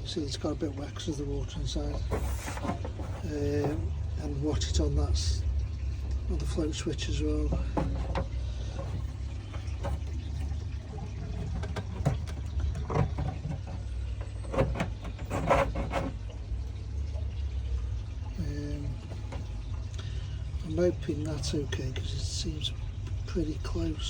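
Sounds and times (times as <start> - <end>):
knocks and rattles of mesh screen: 0.0 - 4.6, 6.1 - 16.3
steady low hum: 0.0 - 24.0.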